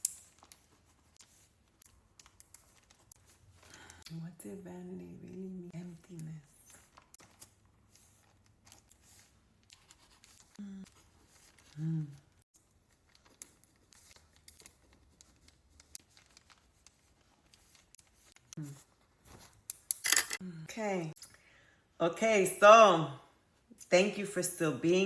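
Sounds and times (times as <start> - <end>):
person humming: 10.6 - 11.0, 11.8 - 12.2.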